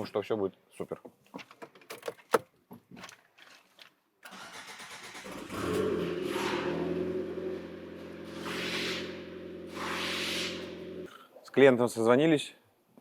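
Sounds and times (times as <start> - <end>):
car engine cranking and idling: 4.3 - 8.5.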